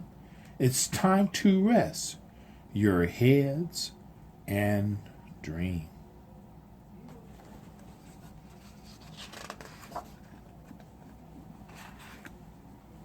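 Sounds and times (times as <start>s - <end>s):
paper page turning: 7.3s - 12.4s.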